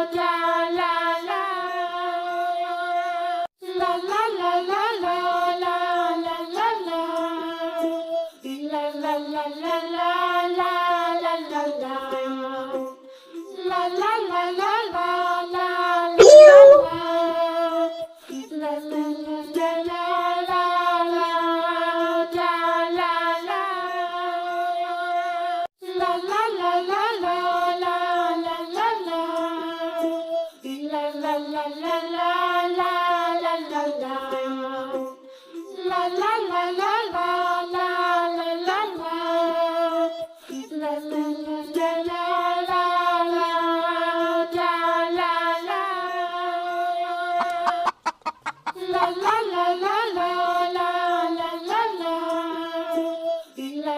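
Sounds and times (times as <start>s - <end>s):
child singing over music: 13.5s - 17.0s
quick stutter of clicks: 47.4s - 48.8s.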